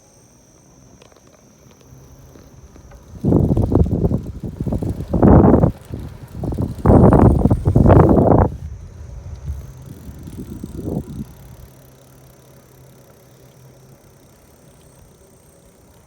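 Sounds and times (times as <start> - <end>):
soft rattling: 2.2 - 8.6
wind buffeting microphone: 2.8 - 11.7.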